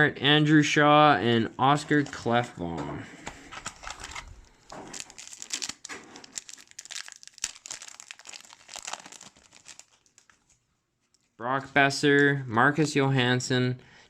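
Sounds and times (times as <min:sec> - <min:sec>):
card pack wrapper crinkling: 0:03.3 - 0:11.3.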